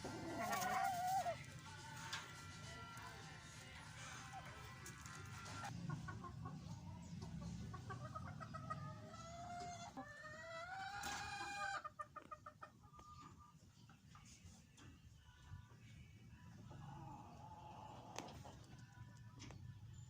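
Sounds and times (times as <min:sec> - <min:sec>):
rooster clucking: 0:00.0 - 0:01.4, 0:05.4 - 0:13.1.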